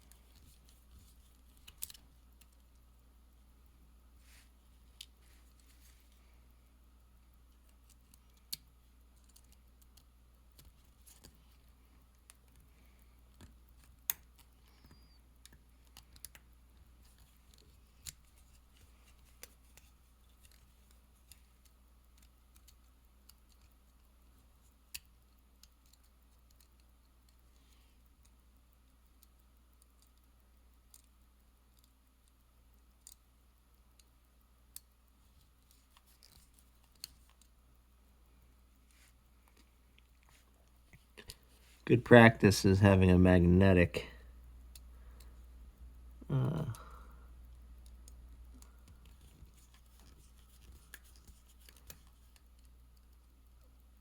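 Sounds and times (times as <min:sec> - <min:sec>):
small metal tools clicking: 0:07.6 - 0:37.6.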